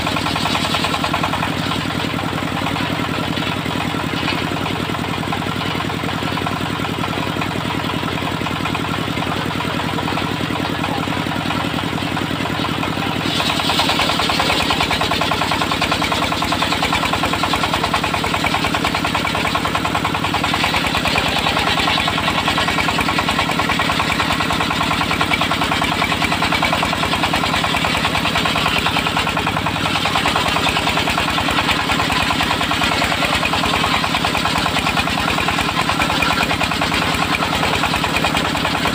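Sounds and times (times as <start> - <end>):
sawmill engine running: 0.0 - 38.9.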